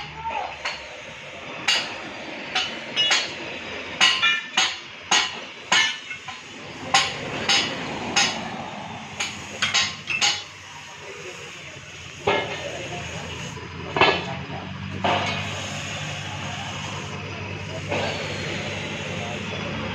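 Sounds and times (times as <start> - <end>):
steel striking steel clanks: 0.6 - 10.7, 12.2 - 12.9, 13.9 - 16.4.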